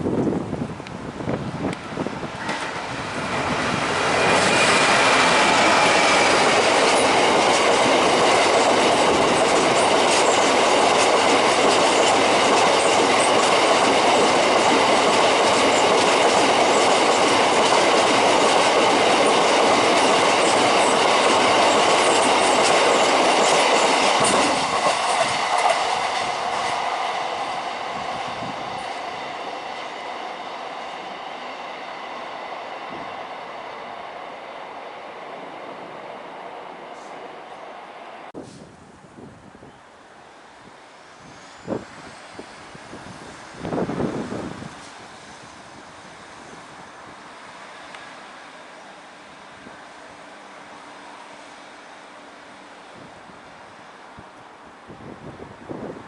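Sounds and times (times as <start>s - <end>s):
train wheels clickety-clack: 2.4s - 27.4s.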